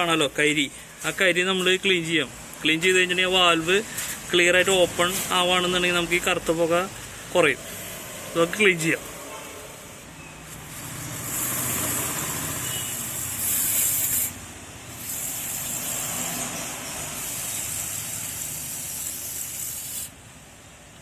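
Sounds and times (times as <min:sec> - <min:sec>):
pressurised spray hissing: 0:10.6 - 0:20.3.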